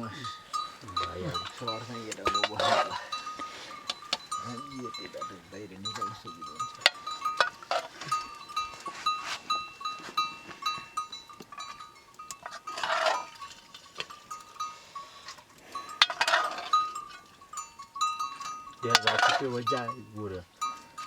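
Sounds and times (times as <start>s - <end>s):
small bells clinking: 0.0s - 21.0s.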